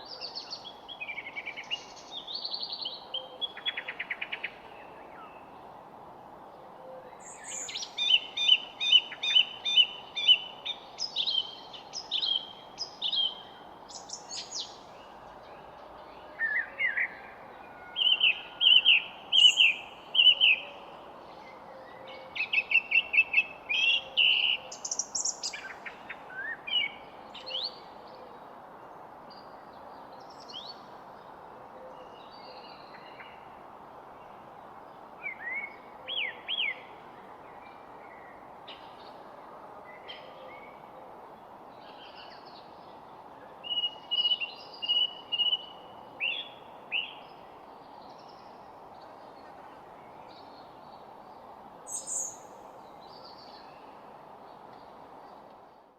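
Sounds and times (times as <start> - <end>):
background hiss: 0.0 - 55.9
songbirds chirping and trilling: 0.0 - 55.9.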